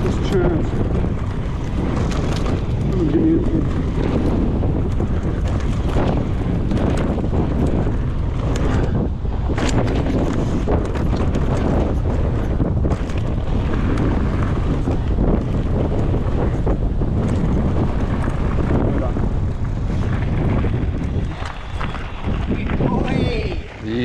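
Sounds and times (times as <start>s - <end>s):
bike clicks and knocks: 0.0s - 22.8s
wind buffeting microphone: 0.0s - 24.0s.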